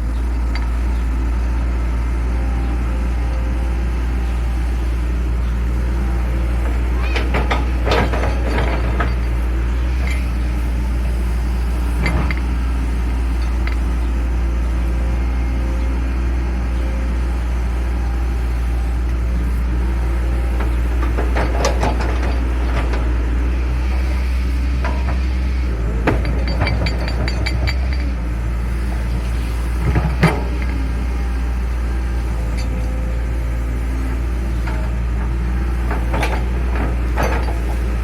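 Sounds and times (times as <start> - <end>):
excavator diesel engine running: 0.0 - 38.0
short metallic clinks: 7.0 - 10.6, 11.9 - 12.6, 13.3 - 14.1, 26.0 - 28.2.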